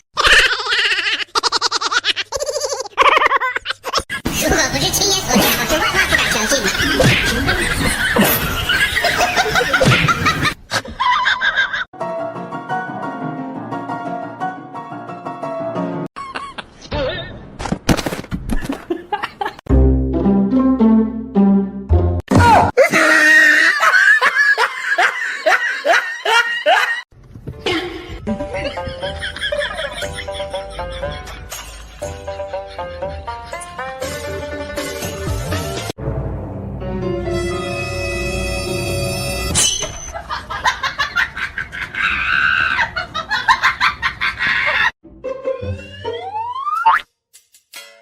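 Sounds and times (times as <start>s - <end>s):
people laughing and snickering: 0.2s - 4.4s, 5.3s - 11.9s, 22.8s - 27.0s, 27.6s - 35.3s, 40.2s - 45.7s
music: 12.0s - 16.1s, 19.7s - 22.2s, 27.5s - 39.6s, 45.0s - 46.1s.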